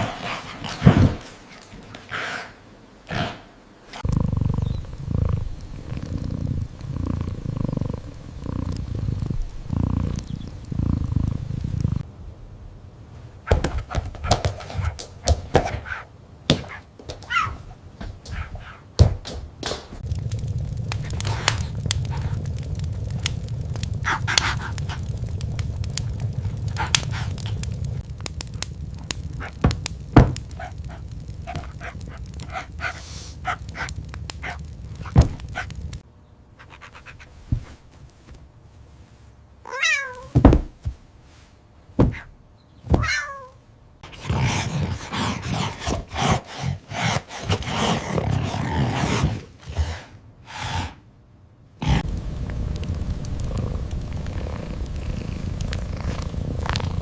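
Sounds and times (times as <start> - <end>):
low rumble: 20.0 - 36.0, 51.9 - 57.0
scratchy scuffling noise: 36.6 - 39.4
cat meowing: 39.6 - 40.4, 42.9 - 43.6.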